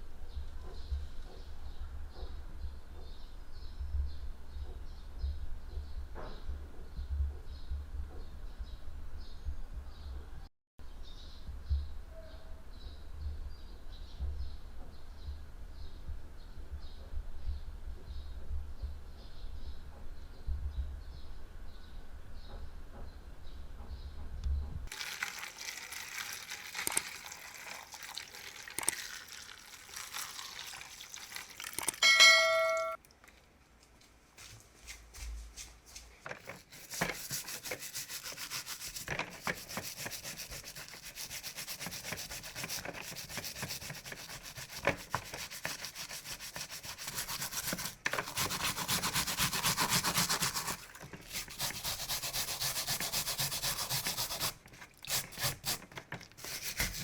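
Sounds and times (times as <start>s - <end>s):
short loud ringing tone: 32.0s - 33.0s.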